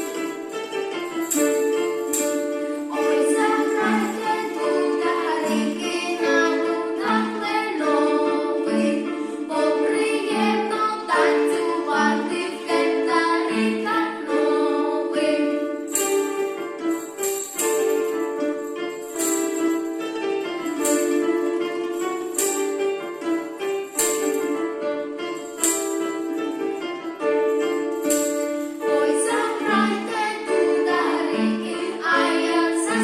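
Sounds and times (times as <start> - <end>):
jingling percussion shake: 0.0 - 7.6, 15.8 - 33.0
instrumental accompaniment: 0.0 - 33.0
group singing folk song: 2.2 - 16.6, 28.7 - 33.0.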